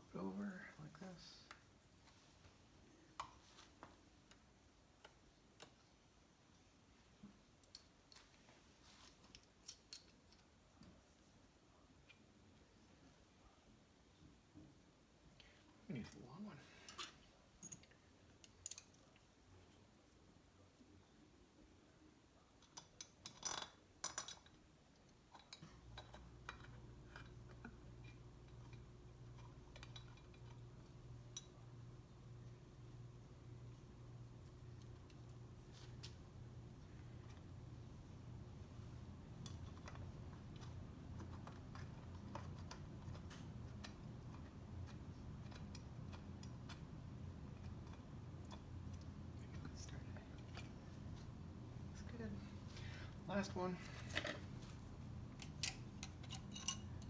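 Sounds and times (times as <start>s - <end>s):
steady low hum: 25.6s - 57.0s
metal bolts clinking: 55.4s - 57.0s.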